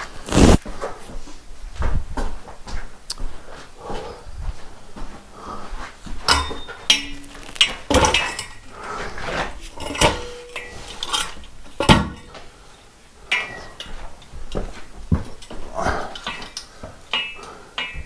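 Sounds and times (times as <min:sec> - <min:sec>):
metallic clanks and knocks: 0:06.3 - 0:12.5, 0:13.3 - 0:15.6.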